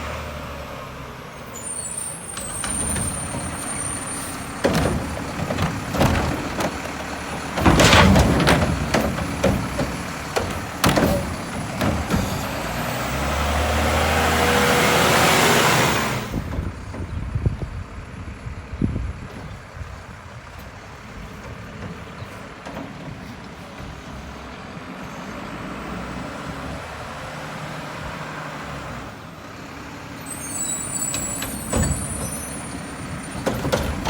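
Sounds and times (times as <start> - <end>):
garbage truck running: 0.0 - 34.0
metal clanks and bangs: 2.3 - 13.9, 19.2 - 24.6, 30.8 - 34.0.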